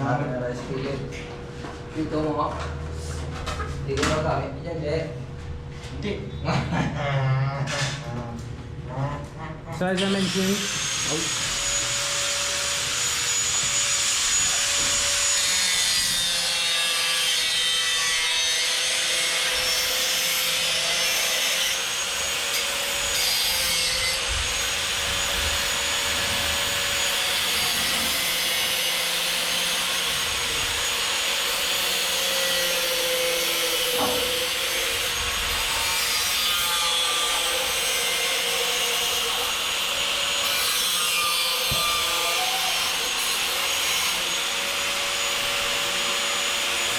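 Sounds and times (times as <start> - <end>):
angle grinder cutting steel: 10.0 - 46.9.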